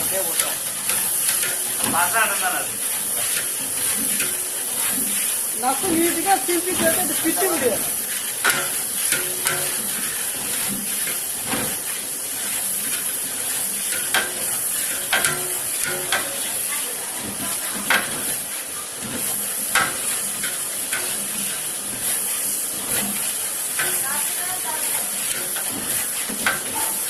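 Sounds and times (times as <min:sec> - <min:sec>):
food sizzling in a pot: 0:00.0 - 0:27.0.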